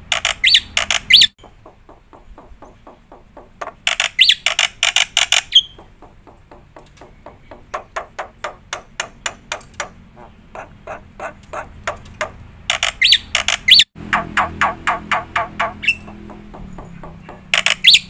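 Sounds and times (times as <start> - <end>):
bird harsh call: 10.1 - 18.0
bird quick clicking notes: 10.6 - 18.0.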